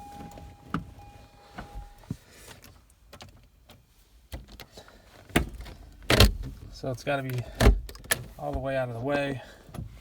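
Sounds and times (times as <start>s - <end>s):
clicks and knocks of car controls: 2.6s - 6.6s, 7.2s - 8.7s.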